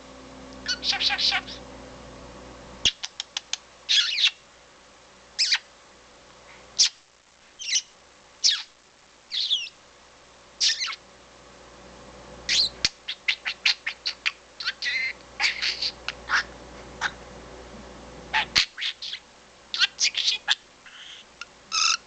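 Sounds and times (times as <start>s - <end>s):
budgerigar chirping: 0.6s - 1.6s, 3.9s - 4.4s, 5.4s - 5.6s, 7.6s - 8.7s, 9.3s - 9.8s, 10.6s - 11.0s, 12.5s - 17.2s, 18.4s - 22.0s.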